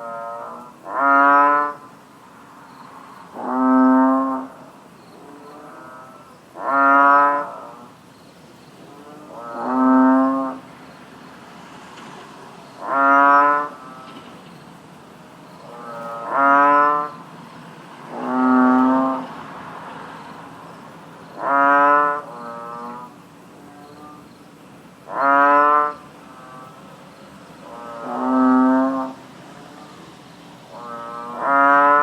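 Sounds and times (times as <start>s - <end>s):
bullfrog croaking: 0.0s - 32.0s
faint answering croaks: 12.0s - 17.3s, 18.1s - 19.4s, 25.1s - 32.0s.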